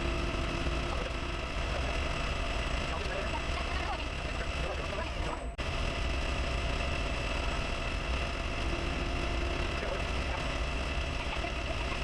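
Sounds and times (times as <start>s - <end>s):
metal lathe humming and whining: 0.0s - 12.0s.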